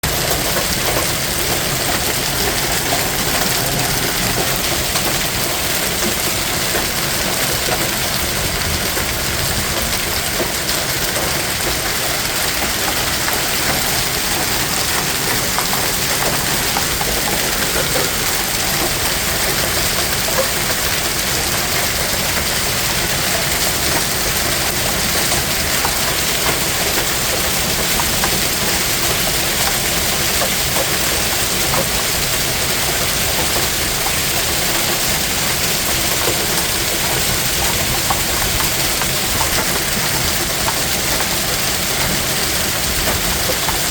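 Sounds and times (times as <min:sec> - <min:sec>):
hail clattering on ground: 0:00.0 - 0:43.9.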